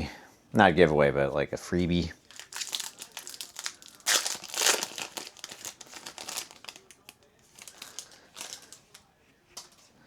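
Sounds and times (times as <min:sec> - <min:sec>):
plastic wrapper crinkling: 0:02.2 - 0:09.1.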